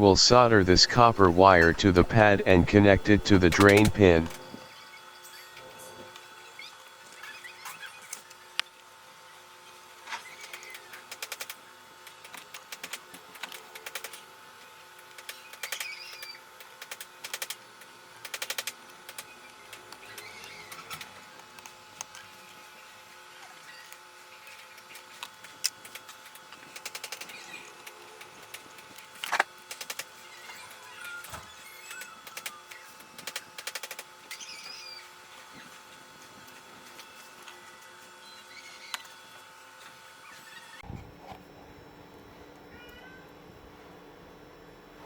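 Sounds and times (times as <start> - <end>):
faint steady whine: 0.0 - 4.5.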